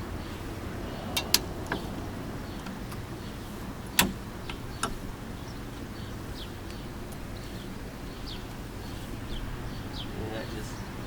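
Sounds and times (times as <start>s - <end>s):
sharp click: 4.0s - 5.0s.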